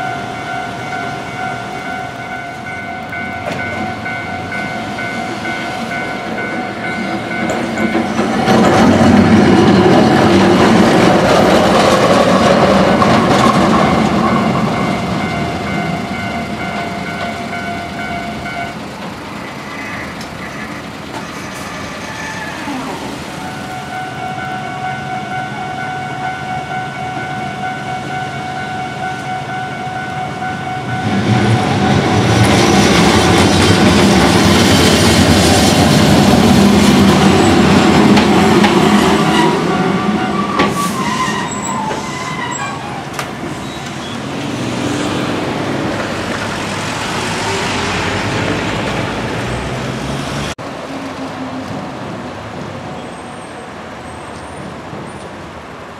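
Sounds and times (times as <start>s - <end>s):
level-crossing warning bell: 0.0s - 10.4s, 12.6s - 19.4s, 20.9s - 44.2s
passing traffic rumble: 0.0s - 55.9s
tram rumble and wheel noise: 0.0s - 55.9s.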